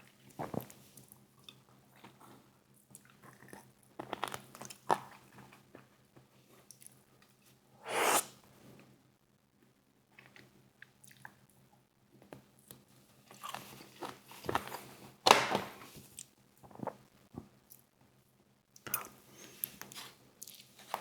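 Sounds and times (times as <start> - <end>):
crunchy chewing of fried chicken: 0.1 - 6.0, 13.2 - 14.9.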